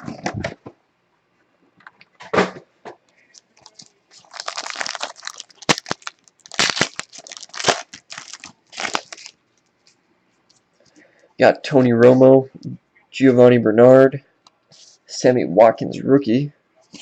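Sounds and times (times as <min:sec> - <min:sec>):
card pack wrappers tearing: 0:03.6 - 0:09.4.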